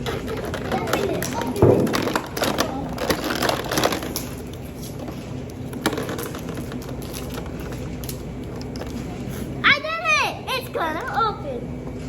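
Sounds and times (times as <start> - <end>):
steady low hum: 0.0 - 12.0
plastic packaging crackling: 0.9 - 4.6.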